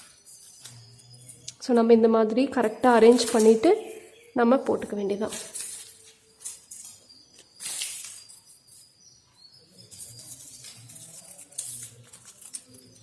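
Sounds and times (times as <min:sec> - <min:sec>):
faint bird chirps: 0:00.0 - 0:13.0
plastic packaging rustling: 0:05.2 - 0:09.0, 0:09.8 - 0:13.0.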